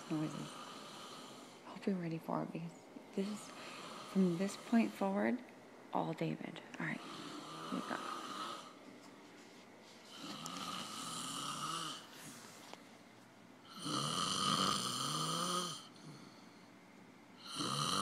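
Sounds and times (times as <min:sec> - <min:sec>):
man snoring: 0:00.0 - 0:01.6, 0:03.7 - 0:04.3, 0:07.0 - 0:08.8, 0:10.1 - 0:12.1, 0:13.7 - 0:16.3, 0:17.4 - 0:18.0.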